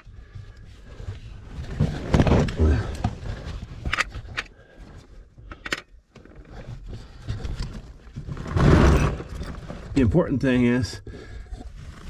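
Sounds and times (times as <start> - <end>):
gear scraping against rock: 6.4 - 10.2.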